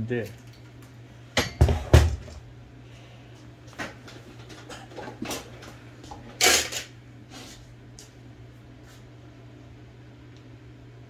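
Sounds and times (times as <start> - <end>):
low steady hum: 0.0 - 11.0
metal parts clicking and clattering: 6.4 - 6.9.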